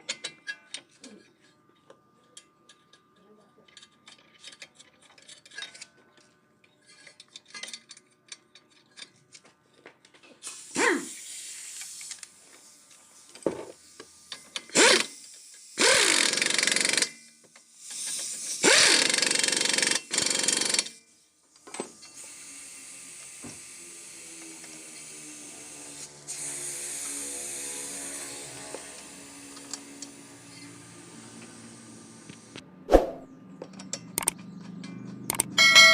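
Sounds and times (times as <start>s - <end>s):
power tool bursts: 10.4s - 12.4s, 13.4s - 21.1s, 22.1s - 32.5s.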